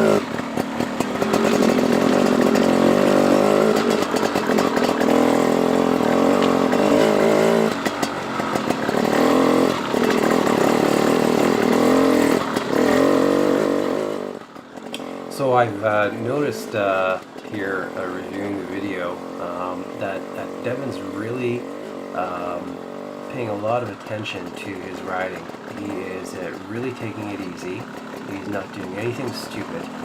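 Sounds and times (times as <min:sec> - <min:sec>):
dirt bike engine revving: 0:00.0 - 0:30.0.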